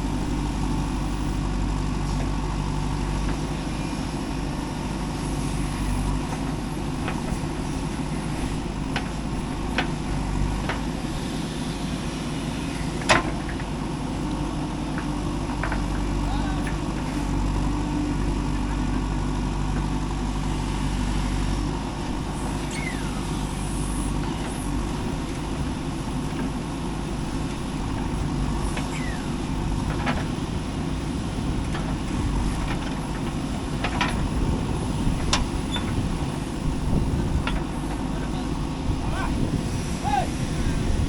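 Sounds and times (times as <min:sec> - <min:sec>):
diesel engine running: 0:00.0 - 0:41.0.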